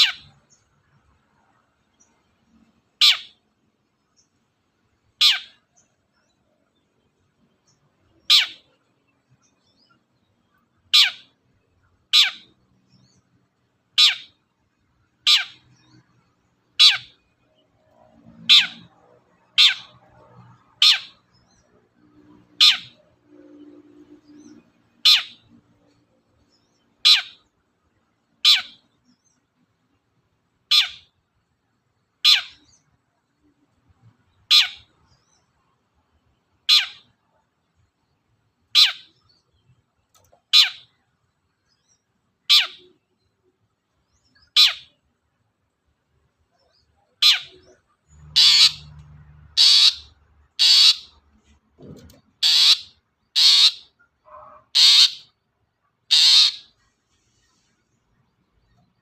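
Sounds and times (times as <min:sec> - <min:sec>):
shrike calling: 0:00.0 - 0:00.5, 0:03.0 - 0:03.4, 0:05.1 - 0:05.8, 0:08.2 - 0:08.8, 0:10.5 - 0:11.4, 0:14.0 - 0:14.4, 0:15.2 - 0:16.0, 0:16.7 - 0:17.3, 0:18.4 - 0:21.7, 0:22.5 - 0:25.6, 0:38.7 - 0:39.2, 0:40.5 - 0:41.0, 0:42.5 - 0:43.0, 0:44.4 - 0:44.9, 0:46.6 - 0:51.2, 0:52.4 - 0:55.4, 0:56.1 - 0:56.8.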